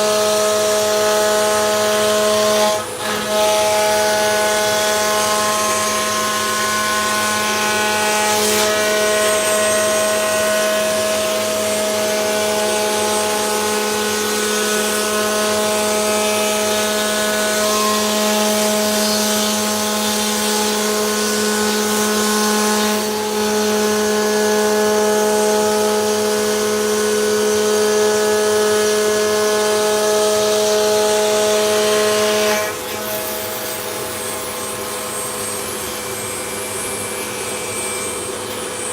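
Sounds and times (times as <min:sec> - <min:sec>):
router cutting wood: 0:00.0 - 0:38.9
router spindle whine: 0:00.0 - 0:38.9.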